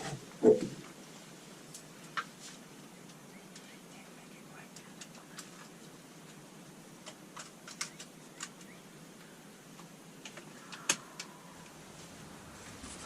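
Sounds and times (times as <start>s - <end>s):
faint steady hiss: 0.0s - 13.0s
light clicks and ticks: 3.0s - 6.4s.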